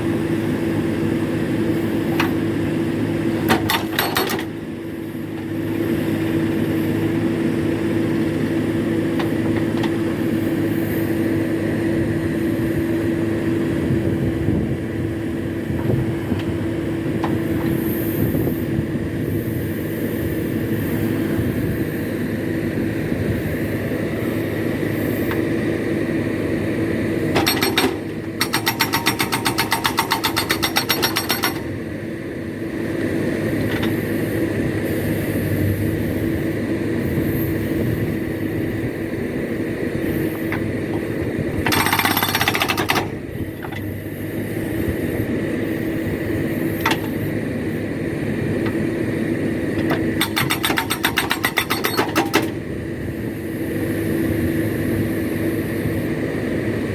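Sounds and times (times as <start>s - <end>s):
backhoe loader engine running: 0.0s - 56.9s
hydraulic rock breaker hammering: 3.3s - 4.6s, 27.3s - 31.8s, 40.2s - 44.2s, 46.6s - 47.3s, 49.7s - 52.6s.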